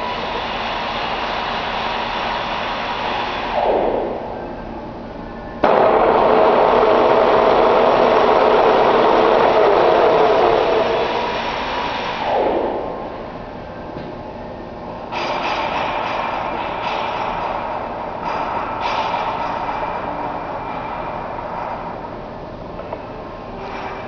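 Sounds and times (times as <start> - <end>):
metal lathe running: 5.7 - 12.4.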